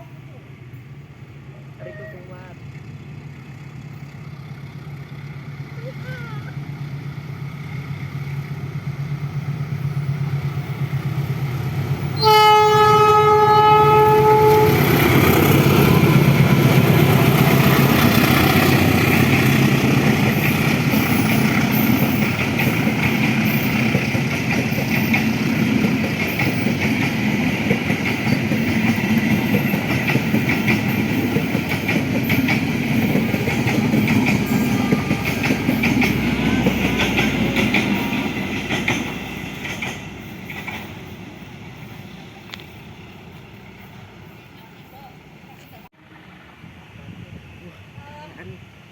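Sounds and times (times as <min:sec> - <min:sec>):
train engine hum: 0:00.0 - 0:48.9
train horn blast: 0:12.2 - 0:15.0, 0:34.4 - 0:37.0
train wheels clacking on rails: 0:14.2 - 0:44.8.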